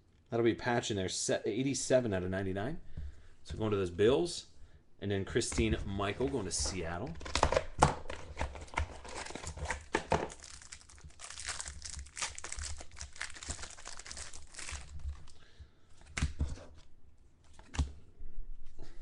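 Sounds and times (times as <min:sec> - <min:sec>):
card pack wrapper crinkling: 0:07.2 - 0:15.4.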